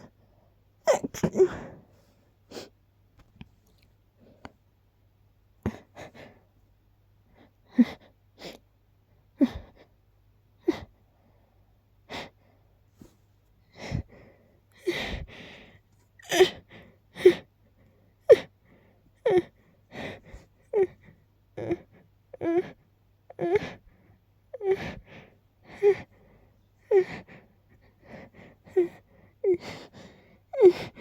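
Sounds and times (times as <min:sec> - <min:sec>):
person sneezing: 0:00.9 - 0:01.7.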